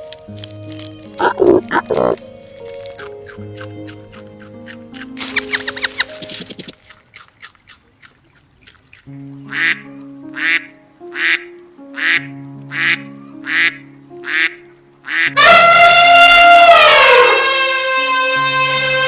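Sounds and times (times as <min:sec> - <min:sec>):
background music sustained notes: 0:00.0 - 0:07.4, 0:08.6 - 0:19.0
loud long animal call: 0:01.2 - 0:02.2, 0:12.0 - 0:19.0.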